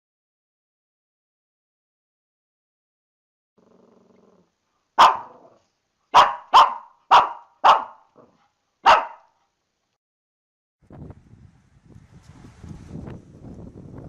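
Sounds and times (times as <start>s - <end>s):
dog growling low: 3.6s - 4.6s
dog barking: 5.0s - 9.4s.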